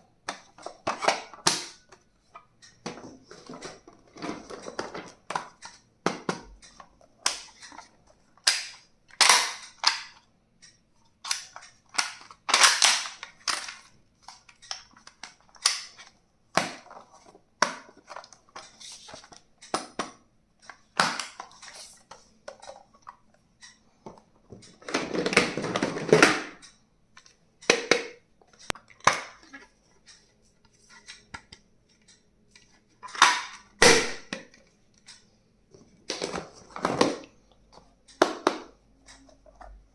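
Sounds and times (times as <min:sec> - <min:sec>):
plastic clicks and snaps: 0:04.6 - 0:17.0.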